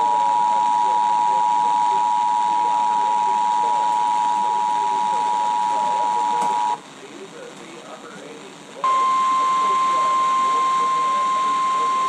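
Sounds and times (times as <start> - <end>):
two-tone alarm signal: 0.0 - 6.8, 8.8 - 12.0
faint muffled voices: 0.0 - 12.0
radio hiss: 0.0 - 12.0.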